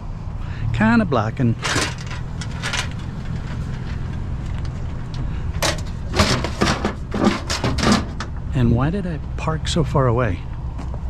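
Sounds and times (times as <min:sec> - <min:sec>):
vehicle engine idling: 0:00.0 - 0:11.0
short knocks and rattles: 0:01.6 - 0:08.4.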